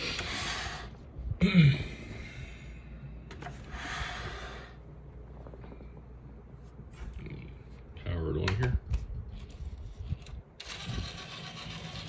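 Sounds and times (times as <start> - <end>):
person sighing: 1.4 - 2.8.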